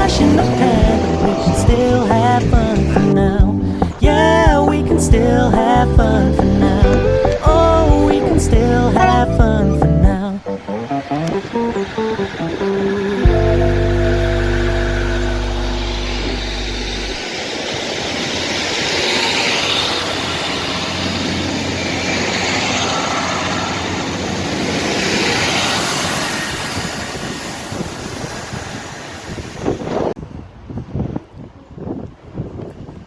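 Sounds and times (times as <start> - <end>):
song's chord ringing out: 0.0 - 17.2
train engine and wheel roar: 0.0 - 33.0.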